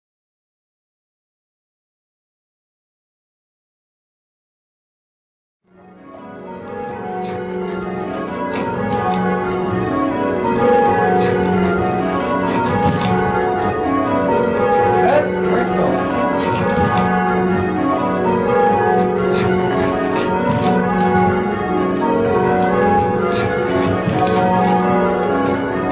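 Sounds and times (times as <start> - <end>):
church bells change ringing: 5.7 - 25.9.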